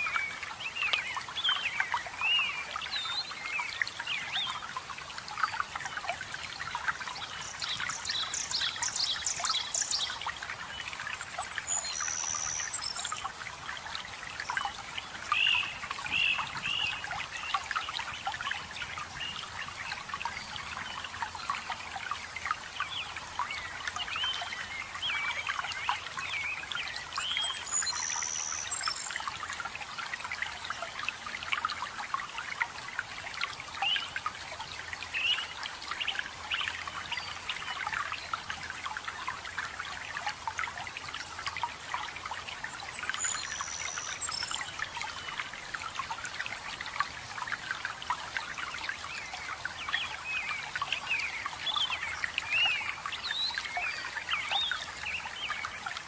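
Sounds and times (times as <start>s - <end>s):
small waterfall splashing: 0.0s - 56.0s.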